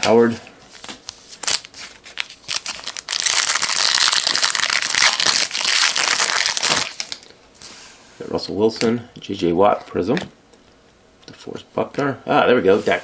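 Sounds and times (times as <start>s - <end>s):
foil wrapper crinkling: 1.4s - 7.3s.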